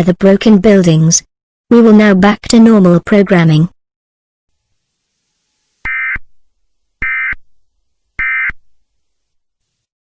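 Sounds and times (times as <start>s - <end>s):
alert data tone bursts: 5.8s - 6.2s, 7.0s - 7.4s, 8.2s - 8.6s.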